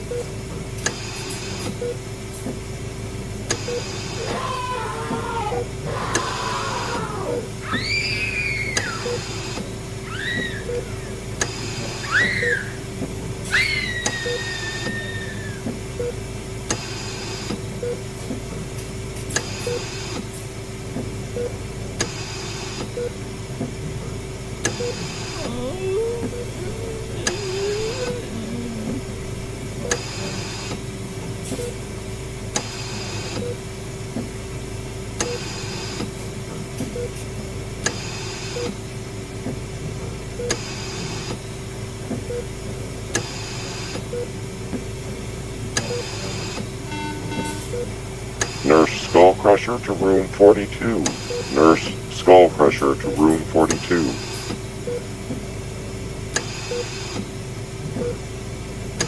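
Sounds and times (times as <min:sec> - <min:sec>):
wavering moan-like tone: 0:04.3 - 0:07.4, 0:25.3 - 0:29.9
machine hum and drone: 0:19.5 - 0:33.6.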